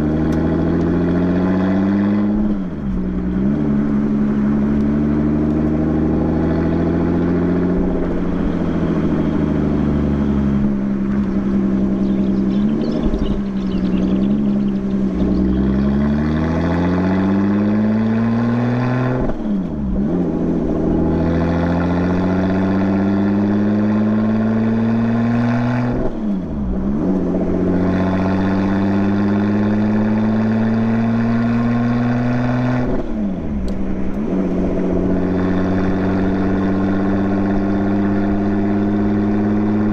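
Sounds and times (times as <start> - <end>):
car engine accelerating: 0.0 - 39.9.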